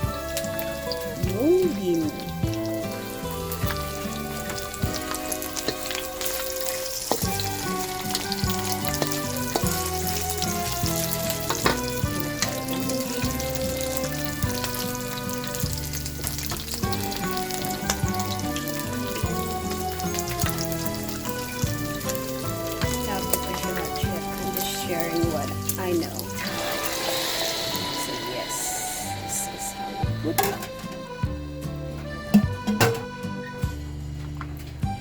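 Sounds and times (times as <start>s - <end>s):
food sizzling in hot oil: 0.0s - 30.6s
music of held notes: 0.0s - 35.0s.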